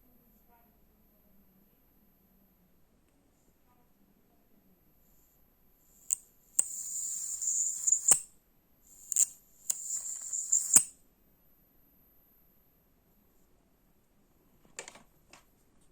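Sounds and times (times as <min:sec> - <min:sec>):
high-pitched hissing whine: 0:06.0 - 0:08.3, 0:08.9 - 0:10.9.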